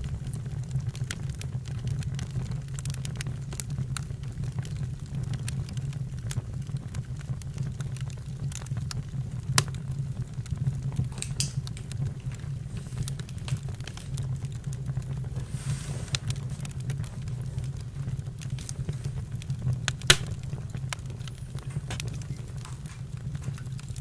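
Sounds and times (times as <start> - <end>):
campfire crackling and popping: 0.0 - 24.0
fire rumble: 0.0 - 24.0
brief hiss: 15.4 - 16.3.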